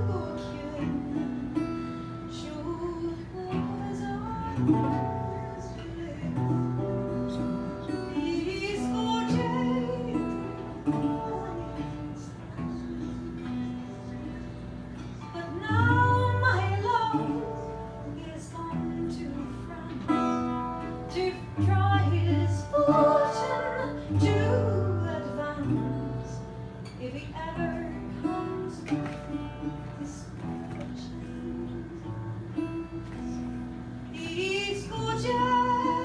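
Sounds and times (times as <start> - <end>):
strummed acoustic guitar: 0.0 - 36.0
person singing: 15.3 - 26.4, 34.2 - 36.0.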